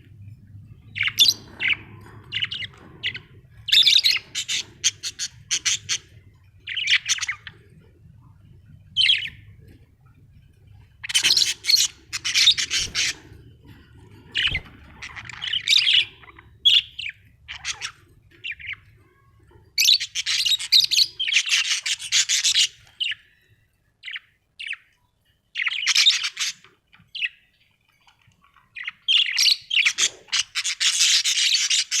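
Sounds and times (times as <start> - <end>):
budgerigars chattering and warbling: 0.9 - 7.6, 8.9 - 9.5, 11.0 - 13.4, 14.2 - 18.9, 19.8 - 23.2, 28.8 - 32.0.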